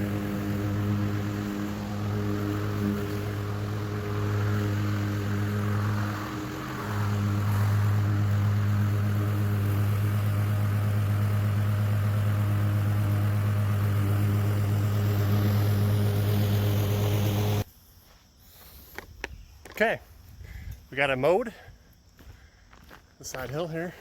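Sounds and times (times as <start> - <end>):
lawn mower engine running: 0.0 - 17.7.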